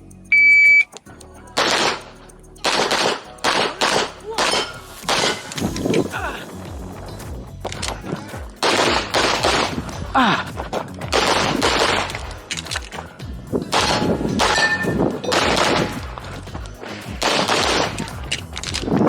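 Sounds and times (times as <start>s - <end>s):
pistol shots: 1.6s - 2.0s, 2.6s - 5.8s, 8.6s - 9.8s, 11.1s - 12.8s, 13.7s - 16.2s, 17.0s - 18.8s
steel plates ringing: 13.7s - 16.0s.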